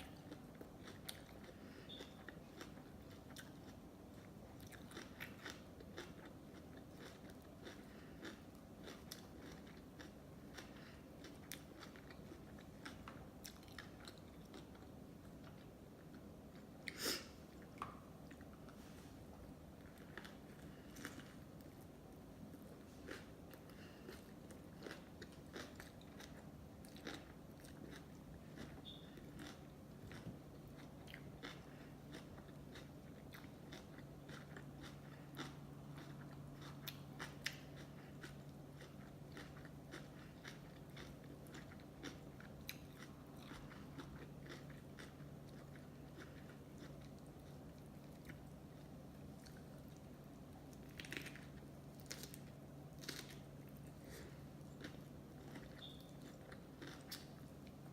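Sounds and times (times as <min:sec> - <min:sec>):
steady low hum: 0:00.0 - 0:57.9
wet chewing mouth clicks: 0:55.5 - 0:57.3.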